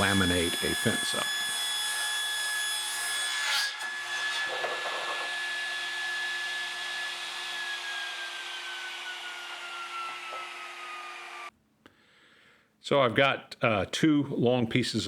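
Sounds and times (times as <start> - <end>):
saw blade whining: 0.0 - 11.5
table saw cutting plywood: 0.0 - 11.5.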